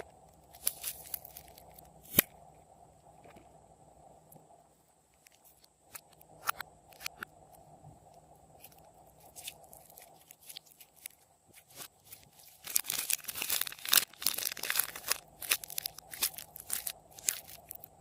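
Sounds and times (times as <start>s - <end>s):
slime crackling and crunching: 0.4s - 2.2s, 8.6s - 18.0s.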